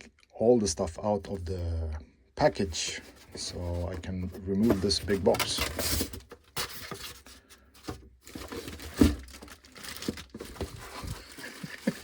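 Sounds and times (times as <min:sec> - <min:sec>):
packaging crinkling: 0:04.6 - 0:12.0.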